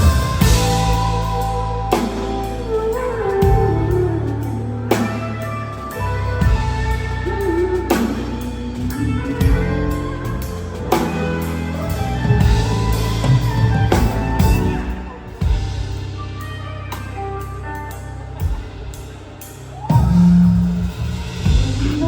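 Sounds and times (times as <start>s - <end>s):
drum and cymbal hits: 0.0s - 2.7s, 6.4s - 16.2s, 18.4s - 22.0s
pop band playing: 0.0s - 22.0s.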